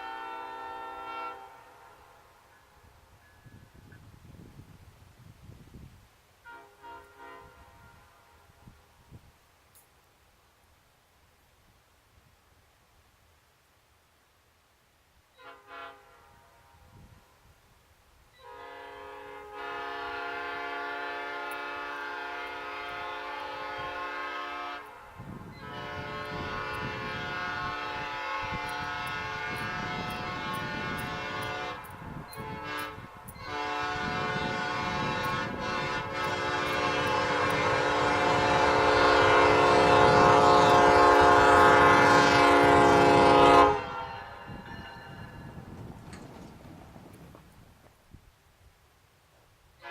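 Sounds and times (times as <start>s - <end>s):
locomotive air horn blasts: 0.0s - 2.3s, 6.4s - 8.8s, 15.3s - 17.1s, 18.4s - 45.8s.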